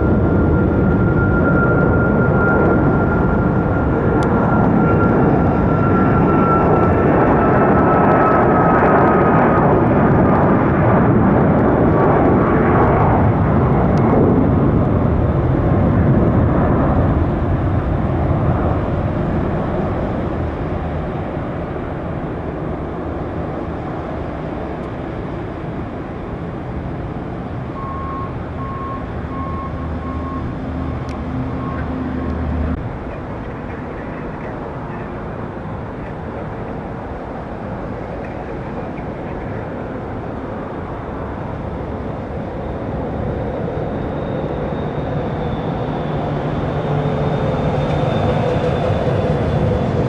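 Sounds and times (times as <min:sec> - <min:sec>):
jet airliner passing: 0:00.0 - 0:50.0
short beeps: 0:27.8 - 0:32.4.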